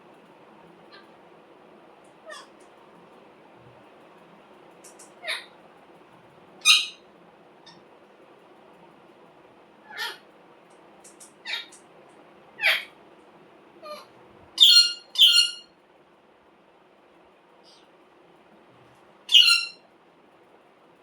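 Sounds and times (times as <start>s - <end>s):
parrot squawking: 2.2s - 2.5s, 5.1s - 5.5s, 6.6s - 7.0s, 9.8s - 10.2s, 11.4s - 11.8s, 12.6s - 12.9s, 13.8s - 15.7s, 19.3s - 19.8s.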